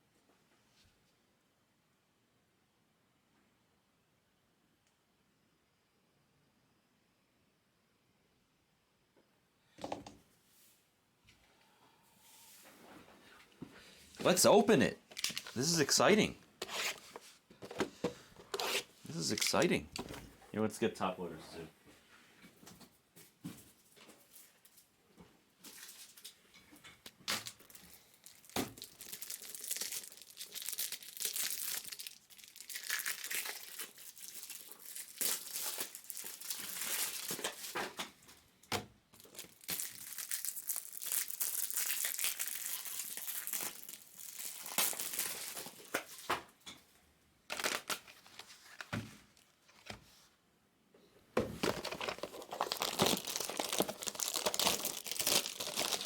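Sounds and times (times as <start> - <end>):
foil wrappers tearing and crinkling: 15.2 - 15.8, 19.1 - 19.7, 27.4 - 37.8, 39.2 - 46.2, 47.5 - 48.5, 51.6 - 56.0.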